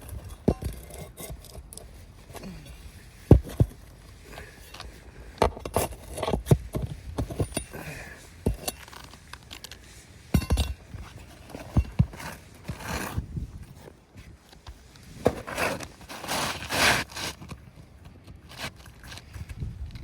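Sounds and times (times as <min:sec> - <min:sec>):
shingles rustling scrape: 0:00.0 - 0:19.6
roof shingles knocking and scraping: 0:03.2 - 0:03.8.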